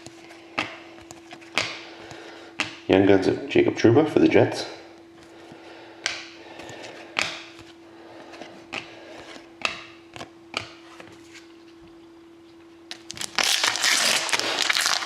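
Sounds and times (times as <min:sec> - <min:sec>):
cards flipping: 0:00.0 - 0:02.8
faint steady hum: 0:00.0 - 0:15.0.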